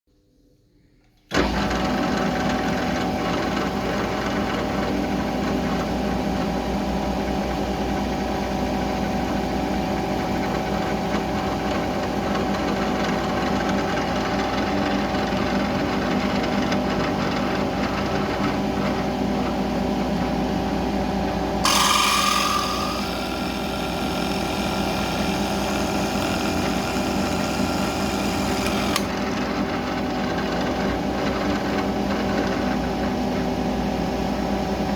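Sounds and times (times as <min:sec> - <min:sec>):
milling machine cutting metal: 0:21.6 - 0:29.4.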